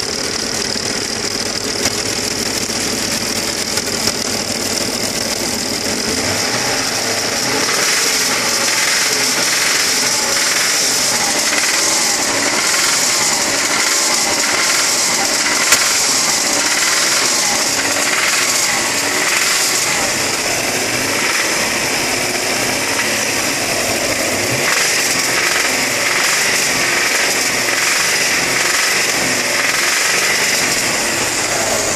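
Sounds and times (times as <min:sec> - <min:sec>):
engine running: 0:00.0 - 0:31.9.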